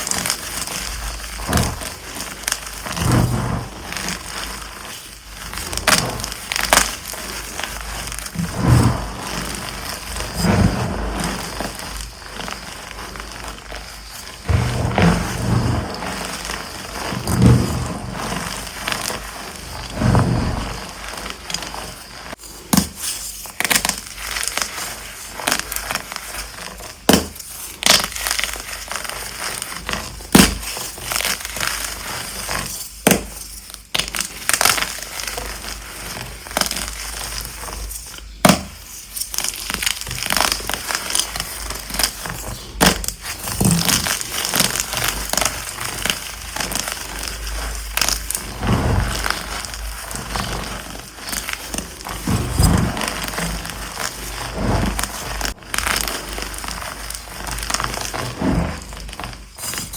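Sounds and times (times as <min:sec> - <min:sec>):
chalk crunching and crackling: 0:00.0 - 0:59.9
soft low thuds: 0:14.4 - 0:18.3.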